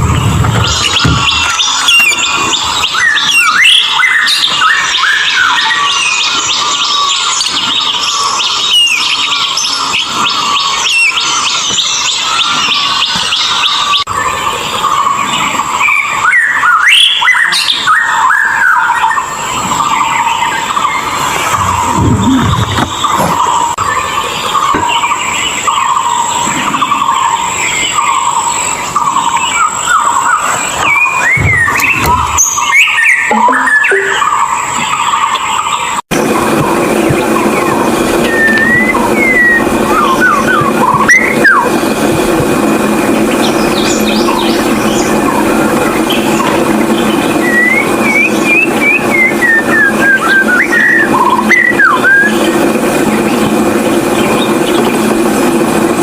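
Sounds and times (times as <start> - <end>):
bird singing whistled notes: 0.0 - 36.0, 37.1 - 42.0, 43.2 - 52.6
high-pitched whine: 0.0 - 56.0
bird singing chattering phrases: 19.8 - 35.3.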